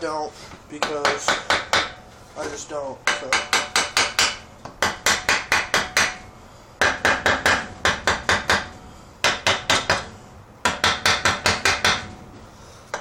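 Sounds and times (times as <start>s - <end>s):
hammer tapping on metal: 3.0s - 6.2s, 6.8s - 12.1s.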